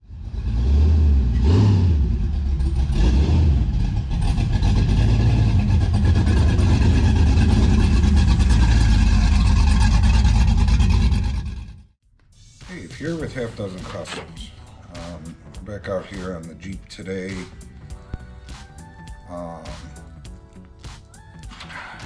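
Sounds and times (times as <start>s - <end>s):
vehicle engine revving: 0.0s - 12.0s.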